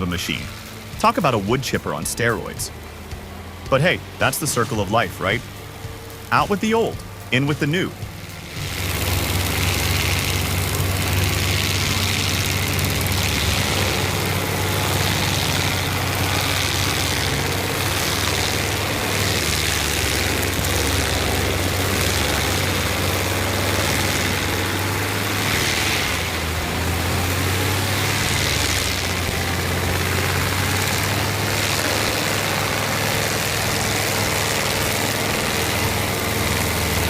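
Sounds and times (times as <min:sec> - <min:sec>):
heavy machinery engine running: 0:00.0 - 0:37.0.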